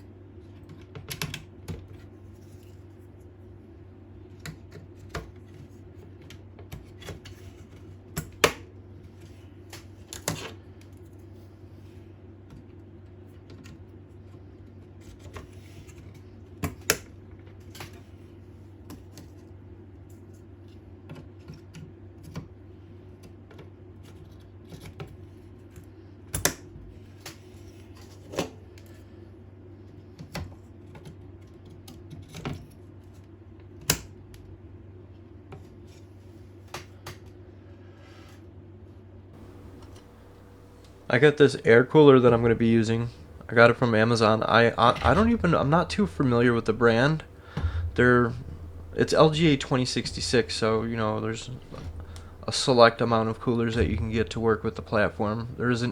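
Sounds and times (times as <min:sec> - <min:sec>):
computer hardware clicks and knocks: 0:39.4 - 0:55.7
steady low hum: 0:39.4 - 0:55.9.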